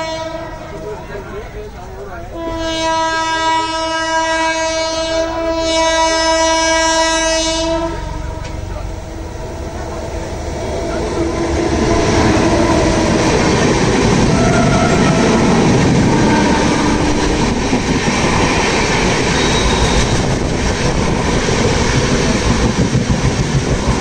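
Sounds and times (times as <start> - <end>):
train horn blast: 0.0 - 0.8, 2.3 - 9.6, 10.8 - 17.6, 19.2 - 20.4
train rumble and wheel clatter: 0.0 - 24.0.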